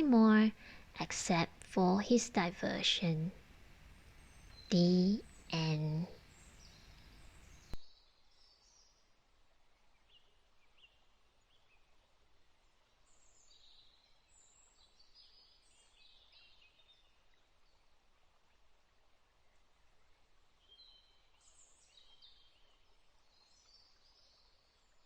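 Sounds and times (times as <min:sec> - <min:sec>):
small birds chirping: 0:00.0 - 0:09.1, 0:13.1 - 0:17.8, 0:20.6 - 0:25.0
low steady hiss: 0:00.0 - 0:25.0.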